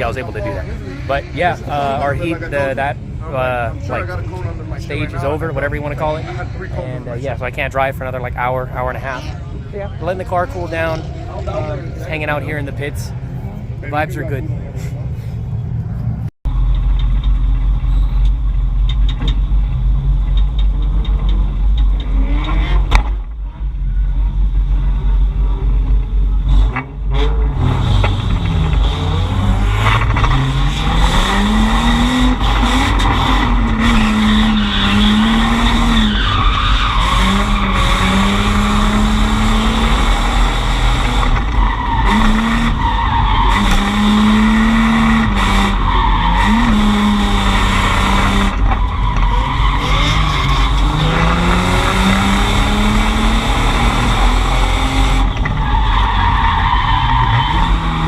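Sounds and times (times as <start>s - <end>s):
car engine revving: 0.0s - 58.0s
tyre squeal: 32.4s - 39.4s, 40.7s - 52.4s.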